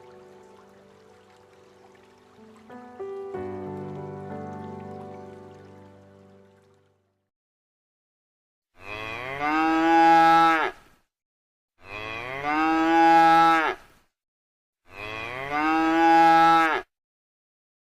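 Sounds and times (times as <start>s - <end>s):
cow mooing: 8.8s - 10.8s, 11.8s - 13.8s, 14.9s - 16.9s.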